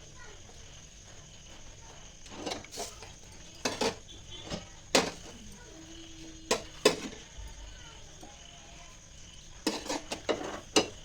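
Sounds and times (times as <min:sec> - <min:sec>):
kitchen utensils knocking and clinking: 0:02.3 - 0:05.4, 0:06.5 - 0:07.2, 0:09.6 - 0:11.0.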